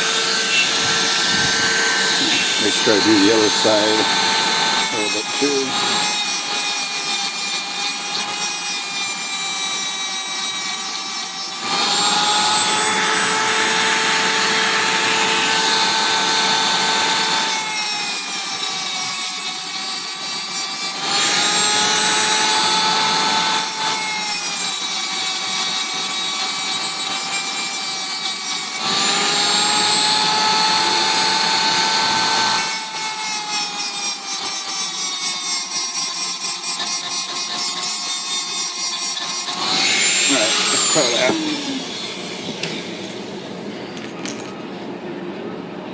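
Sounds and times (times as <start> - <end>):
rotary tool whine: 0.0 - 44.6
bit rasping on metal: 4.8 - 9.0.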